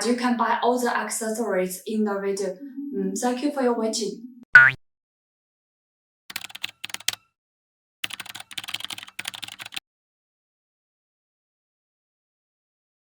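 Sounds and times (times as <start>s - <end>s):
rapid keyboard typing clicks: 6.3s - 7.2s, 8.0s - 9.8s.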